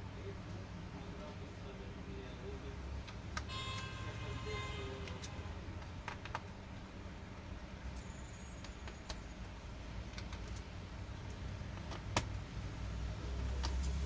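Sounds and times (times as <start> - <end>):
low steady hum: 0.0 - 14.0
light clicks and taps: 10.0 - 12.4.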